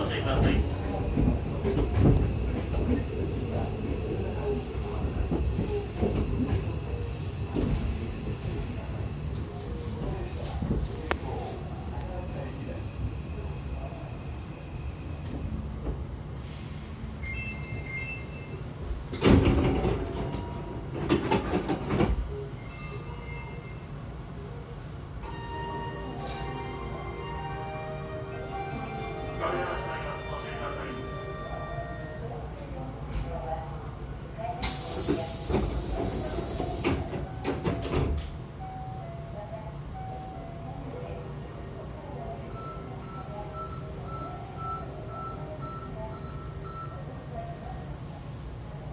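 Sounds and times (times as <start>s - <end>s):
air hiss of train doors: 3.2s - 9.0s, 16.4s - 17.4s, 34.6s - 38.3s
train doors knocking shut: 19.1s - 22.3s, 35.4s - 38.4s.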